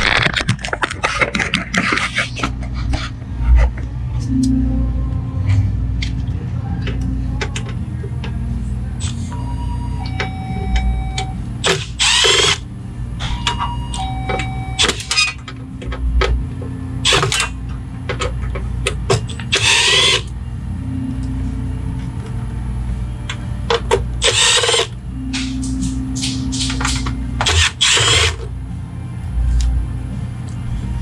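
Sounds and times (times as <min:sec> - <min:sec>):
low hum: 0:00.0 - 0:31.0
cordless drill running: 0:11.6 - 0:12.6, 0:17.1 - 0:17.4, 0:19.5 - 0:20.3, 0:24.2 - 0:24.9, 0:27.4 - 0:28.4.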